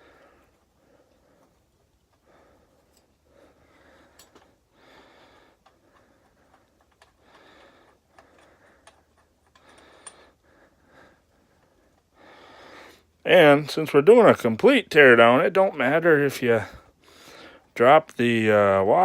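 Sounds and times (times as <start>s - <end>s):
soft breathing: 0.0s - 13.2s, 16.6s - 17.8s
small metal parts clicking: 4.0s - 4.6s, 5.5s - 10.4s.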